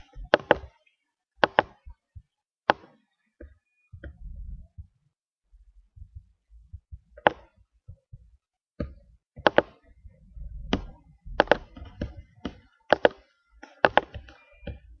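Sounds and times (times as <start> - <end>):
sharp taps and knocks: 1.4 - 4.2, 6.0 - 9.9, 10.7 - 14.8
low muffled thumps: 3.9 - 12.6.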